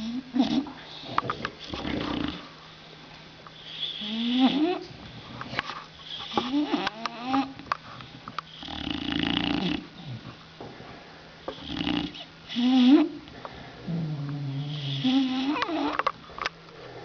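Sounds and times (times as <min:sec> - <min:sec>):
bulldog snoring: 0:00.0 - 0:00.7, 0:01.7 - 0:02.5, 0:03.7 - 0:04.8, 0:06.2 - 0:07.6, 0:08.5 - 0:10.2, 0:11.5 - 0:13.2, 0:13.9 - 0:16.0.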